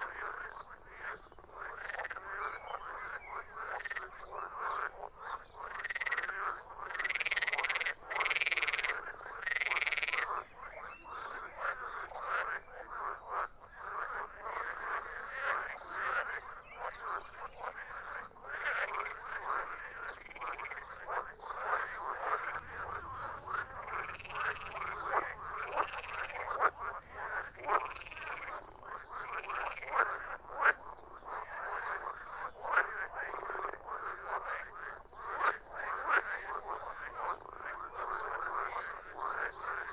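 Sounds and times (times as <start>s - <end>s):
frogs croaking: 0.0s - 39.9s
long loud frog calls: 21.8s - 30.9s.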